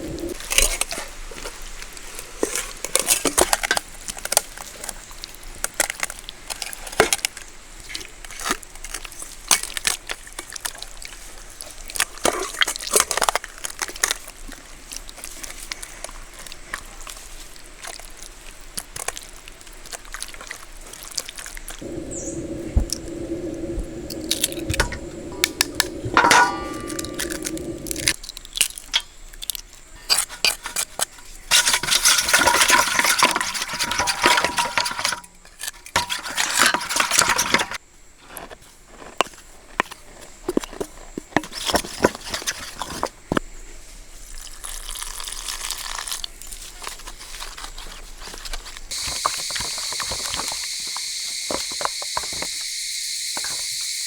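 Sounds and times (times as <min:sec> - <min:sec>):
insects chirping: 0:21.7 - 0:44.7, 0:48.8 - 0:54.0
utensils clattering against pot: 0:21.8 - 0:28.2, 0:30.1 - 0:37.8.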